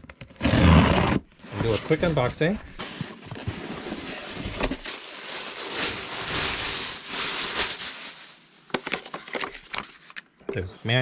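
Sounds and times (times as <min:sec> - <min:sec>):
packaging rustling and crinkling: 0:01.6 - 0:10.2.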